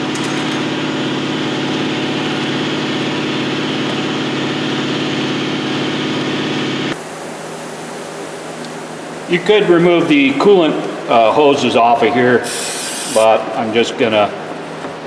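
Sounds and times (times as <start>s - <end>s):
motor running: 12.4s - 13.2s.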